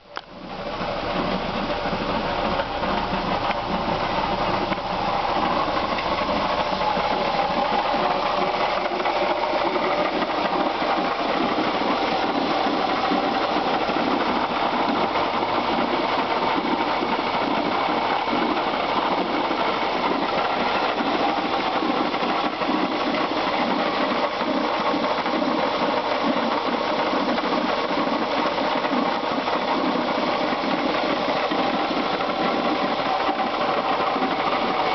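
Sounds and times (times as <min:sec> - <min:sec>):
car engine running: 0:00.1 - 0:24.0
fast even engine knocking: 0:00.1 - 0:34.9.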